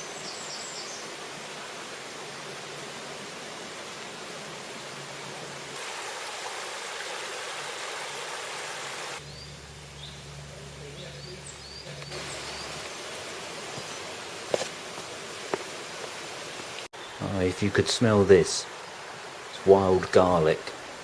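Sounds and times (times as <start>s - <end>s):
small birds chirping: 0.0s - 1.2s, 9.1s - 14.3s, 16.4s - 17.8s
rushing river water: 0.0s - 11.0s, 12.0s - 21.0s.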